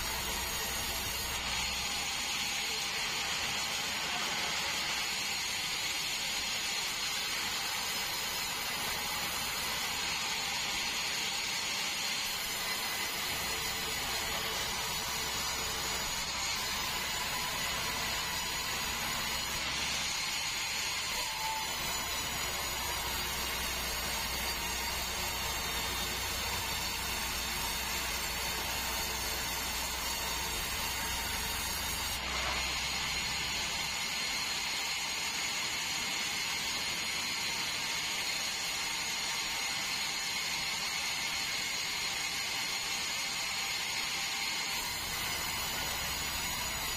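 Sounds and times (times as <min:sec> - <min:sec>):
band saw sawing log: 0:12.2 - 0:34.2, 0:44.8 - 0:46.9.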